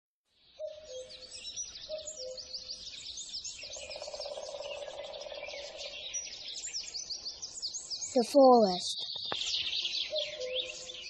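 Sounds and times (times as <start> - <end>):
birds chirping and trilling: 0.3 - 11.0
rapidly pulsing bird trill: 0.8 - 7.0.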